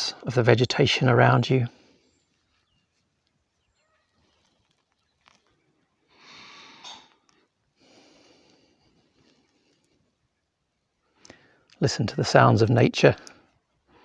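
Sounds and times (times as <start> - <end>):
person breathing: 6.1 - 10.0, 11.0 - 11.7.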